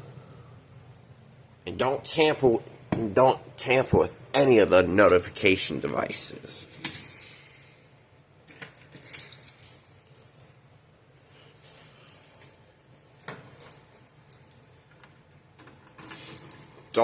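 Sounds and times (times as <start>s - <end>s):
keys jangling: 8.5s - 10.6s, 16.0s - 17.0s.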